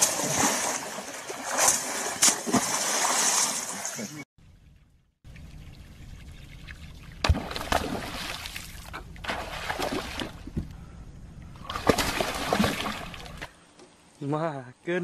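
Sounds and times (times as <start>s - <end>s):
water splashing and sloshing: 0.0s - 10.7s, 11.4s - 13.6s
steady low hum: 4.4s - 15.0s.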